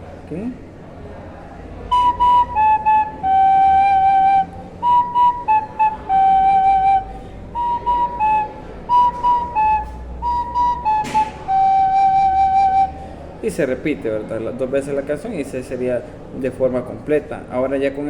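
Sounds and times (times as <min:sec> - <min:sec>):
recorder playing slow melody: 0:01.9 - 0:13.0.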